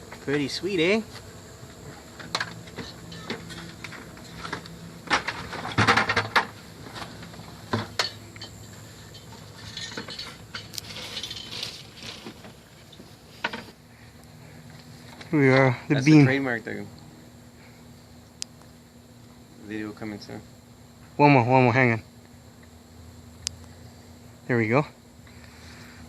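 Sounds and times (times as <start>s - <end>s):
honeybees buzzing: 0.0s - 15.2s
sharp clinks and knocks: 2.2s - 6.5s, 7.2s - 12.2s.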